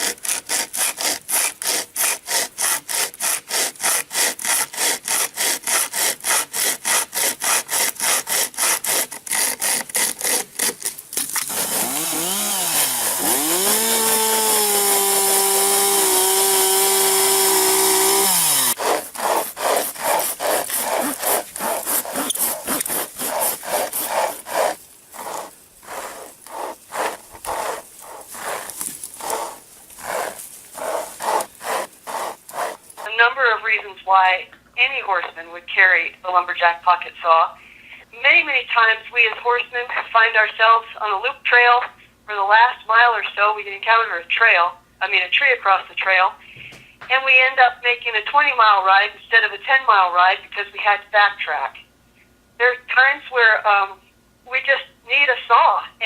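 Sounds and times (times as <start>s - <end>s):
hand chain saw cutting wood: 0.0s - 33.1s
steady whining tone: 11.5s - 33.1s.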